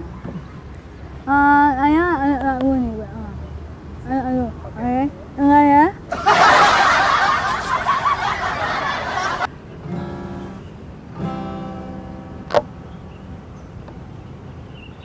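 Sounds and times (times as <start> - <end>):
loud dense noise burst: 6.1 - 9.6
acoustic guitar strummed: 9.8 - 13.7.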